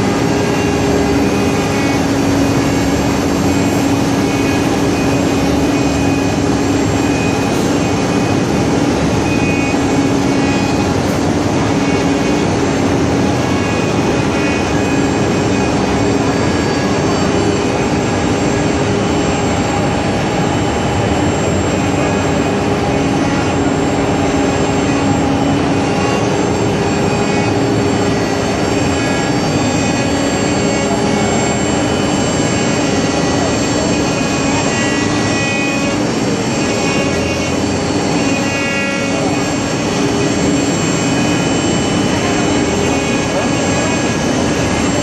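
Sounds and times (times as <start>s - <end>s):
wood router cutting wood: 0.0s - 18.0s, 21.5s - 45.0s.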